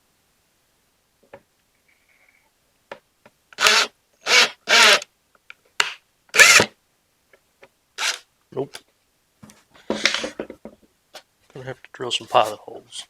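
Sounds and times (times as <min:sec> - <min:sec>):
screw grinding into wood: 0:03.6 - 0:05.1, 0:05.8 - 0:06.7, 0:08.0 - 0:08.2, 0:09.9 - 0:10.4.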